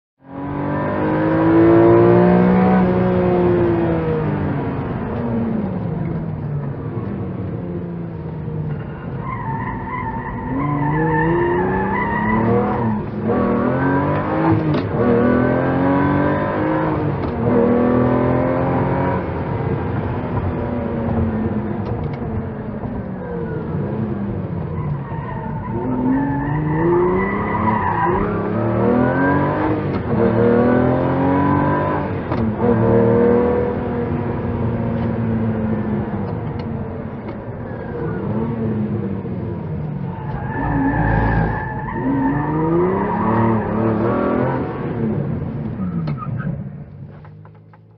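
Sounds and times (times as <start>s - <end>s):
sports car engine revving: 25.7s - 47.9s.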